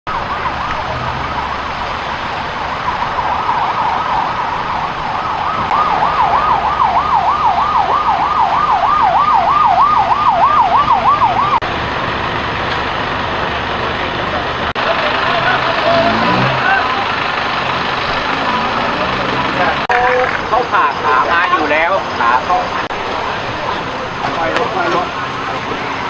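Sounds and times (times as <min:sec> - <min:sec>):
emergency siren yelping: 0:00.1 - 0:11.6
steady background noise: 0:00.1 - 0:26.0.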